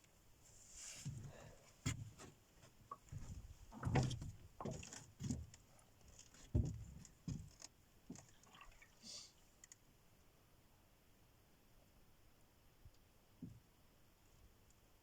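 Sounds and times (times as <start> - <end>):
soft irregular knocks and thumps: 1.0 - 8.5, 13.4 - 13.7.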